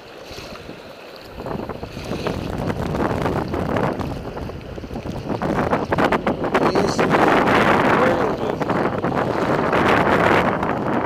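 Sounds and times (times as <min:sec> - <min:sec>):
gusty wind buffeting microphone: 0:00.0 - 0:11.0.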